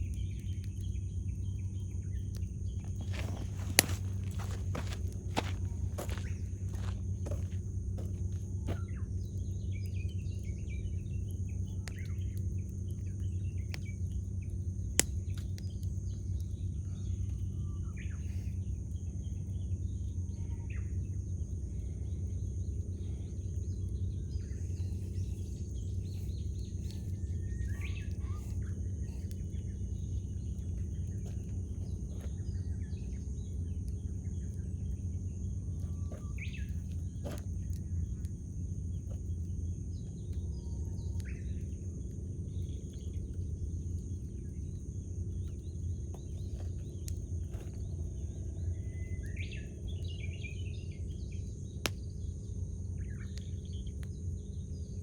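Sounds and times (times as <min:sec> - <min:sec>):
campfire crackling and popping: 0:00.0 - 0:17.6, 0:22.4 - 0:48.3
birds chirping: 0:00.0 - 0:19.5, 0:20.3 - 0:41.9
steady low rumble: 0:00.0 - 0:55.0.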